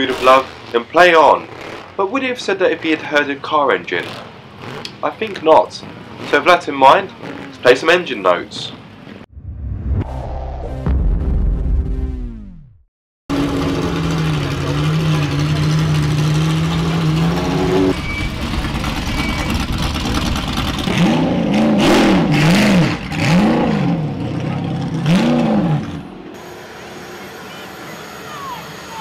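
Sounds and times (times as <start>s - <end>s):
car engine revving: 0.0s - 7.9s, 13.3s - 29.0s.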